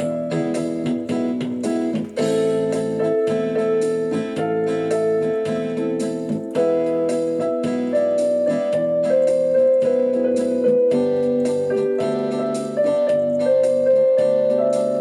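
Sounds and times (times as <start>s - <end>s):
electric piano chords: 0.0s - 15.0s
steady regular beat: 0.0s - 15.0s.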